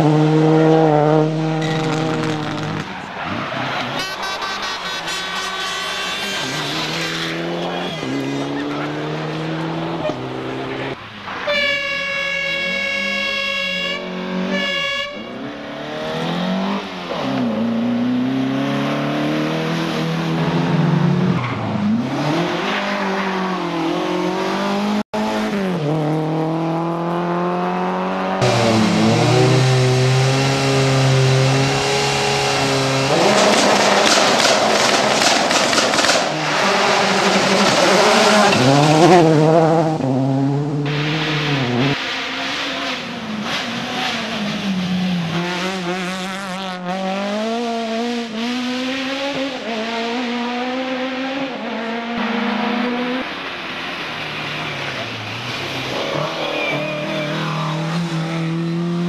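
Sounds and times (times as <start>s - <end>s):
racing car engines revving: 0.0s - 59.0s.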